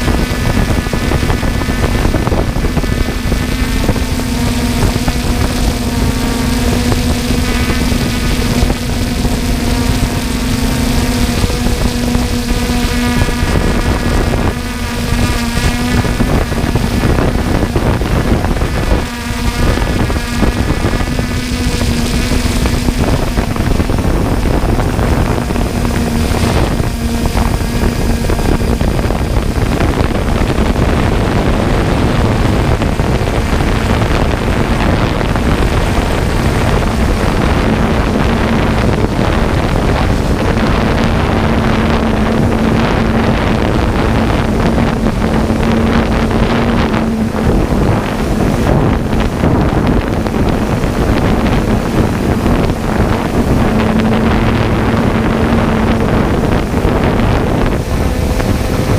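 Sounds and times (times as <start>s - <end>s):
high-pitched whine: 0.0s - 58.9s
machinery engine drone: 0.0s - 58.9s
wind buffeting microphone: 0.0s - 58.9s.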